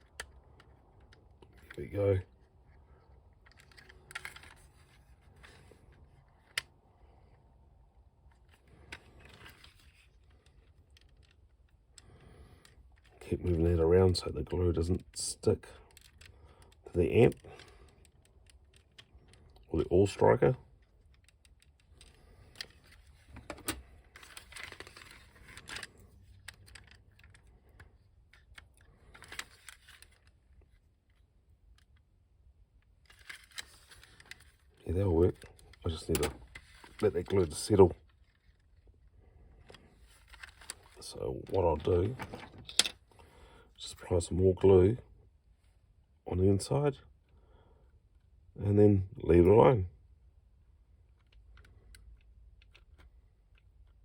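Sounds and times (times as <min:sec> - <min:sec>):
plastic toy parts rustling and clicking: 0:00.0 - 0:07.6, 0:08.2 - 0:14.3, 0:14.9 - 0:43.3, 0:50.8 - 0:54.0
plastic toy parts clicking: 0:20.8 - 0:30.3.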